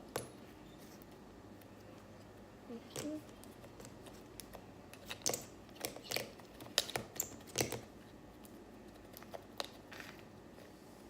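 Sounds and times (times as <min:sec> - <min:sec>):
small objects clicking and tapping: 0:02.9 - 0:10.2.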